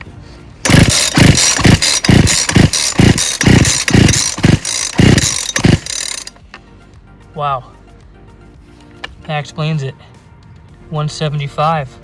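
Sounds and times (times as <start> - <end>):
chainsaw starter cord pulls: 0.6 - 6.4.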